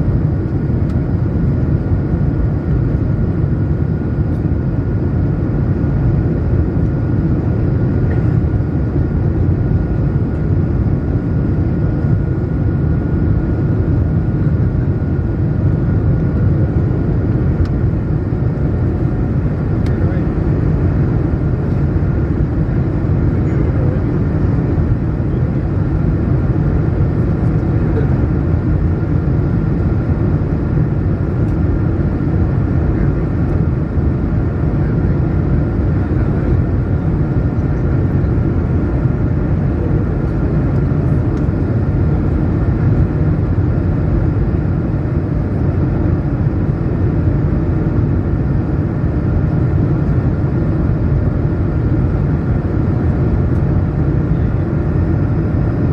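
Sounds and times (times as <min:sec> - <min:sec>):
airplane cabin airflow and engine: 0:00.0 - 0:55.9
faint steady whine: 0:00.0 - 0:55.9.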